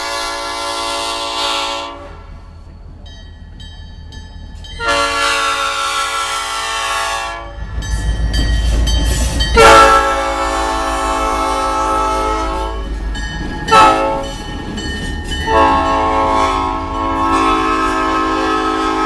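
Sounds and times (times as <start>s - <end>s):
locomotive air horn blasts: 0.0s - 2.4s, 4.8s - 7.6s, 9.5s - 12.9s, 13.7s - 14.4s, 15.4s - 19.0s.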